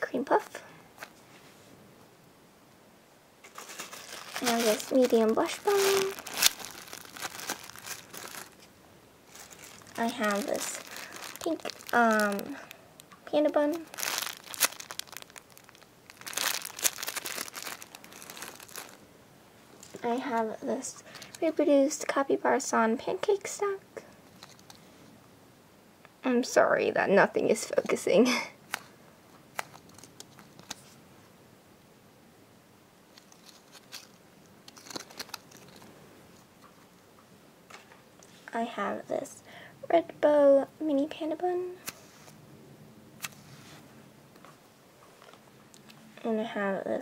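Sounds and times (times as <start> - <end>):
squishy toy crinkling and rustling: 3.4 - 8.7, 9.3 - 19.0, 24.2 - 24.8, 29.5 - 31.0, 33.1 - 35.9.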